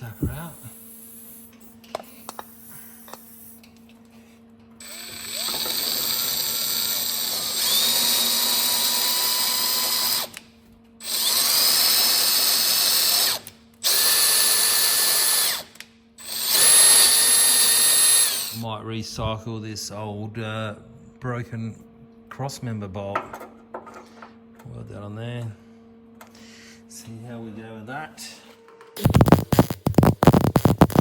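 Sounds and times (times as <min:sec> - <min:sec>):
power tool motor whine: 0:04.8 - 0:10.4, 0:11.0 - 0:18.6, 0:29.0 - 0:31.0.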